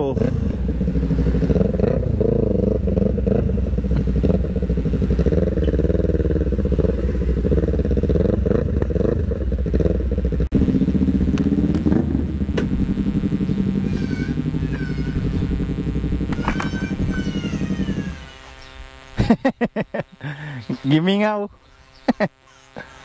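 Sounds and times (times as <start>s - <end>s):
motorcycle engine revving: 0.0s - 21.0s.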